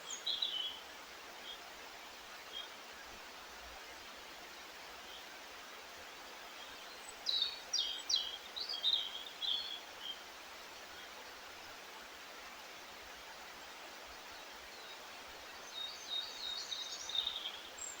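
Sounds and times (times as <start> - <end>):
songbird chirping: 0.0 - 0.8, 6.6 - 10.2, 14.3 - 18.0
steady outdoor hiss: 0.0 - 18.0.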